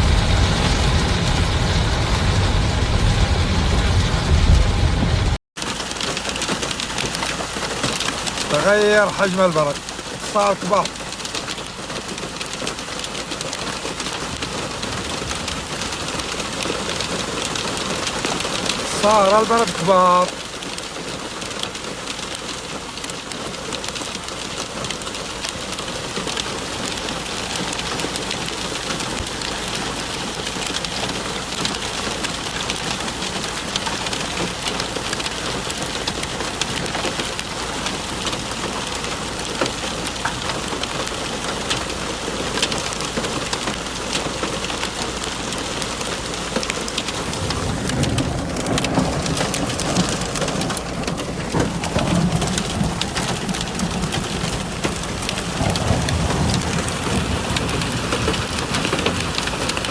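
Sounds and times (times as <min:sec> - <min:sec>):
deep rumble: 0:00.0 - 0:05.4, 0:47.0 - 0:59.9
heavy rain and hail pelting: 0:00.0 - 0:59.9.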